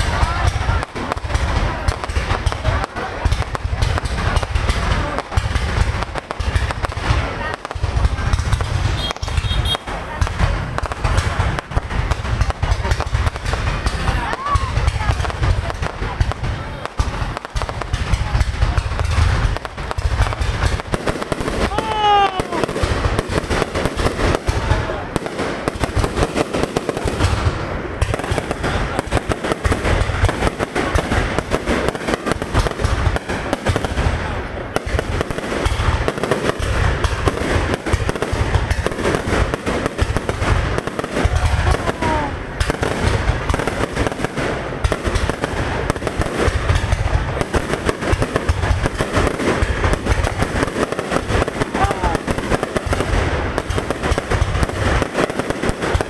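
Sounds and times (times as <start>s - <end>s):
deep fireworks booms: 0.0s - 56.0s
fireworks bangs and crackling: 0.0s - 56.0s
rising fireworks whistles: 6.7s - 10.1s.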